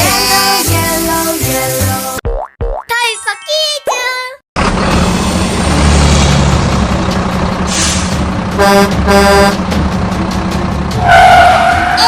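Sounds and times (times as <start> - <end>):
truck engine rumbling: 4.6 - 12.0
truck horn honks: 7.9 - 9.6.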